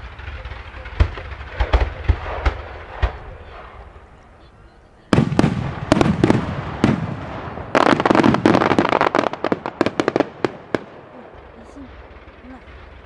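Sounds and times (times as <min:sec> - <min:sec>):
rapid crackling pops: 0:00.0 - 0:04.4
fireworks bangs: 0:00.0 - 0:13.0.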